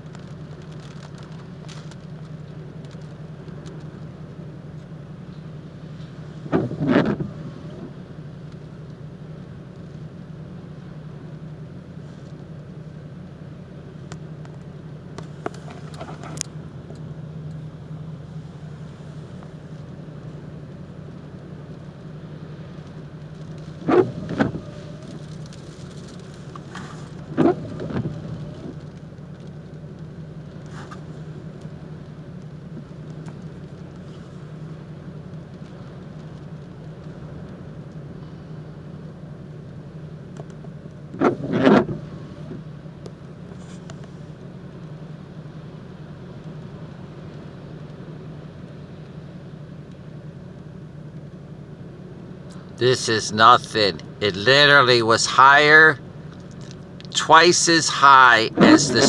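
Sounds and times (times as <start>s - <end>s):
car hum from inside: 0.0s - 59.0s.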